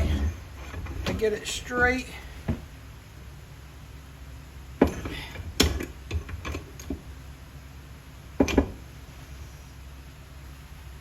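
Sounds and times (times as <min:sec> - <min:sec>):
metal knocking and clanking: 0:00.0 - 0:01.3, 0:08.4 - 0:08.8.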